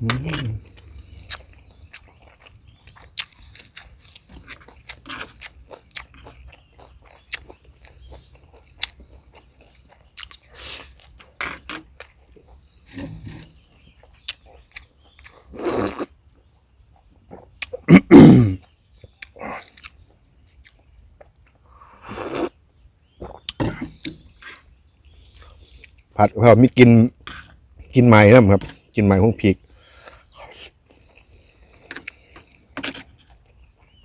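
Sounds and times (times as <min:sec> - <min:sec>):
person chewing: 0:00.0 - 0:12.6, 0:17.3 - 0:17.9, 0:18.6 - 0:21.4, 0:23.2 - 0:23.6
insect chirping: 0:00.0 - 0:34.0.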